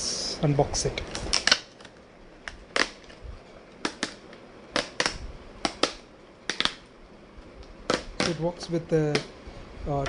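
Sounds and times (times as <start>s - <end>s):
packaging clicks and taps: 1.2s - 6.9s, 7.6s - 8.4s.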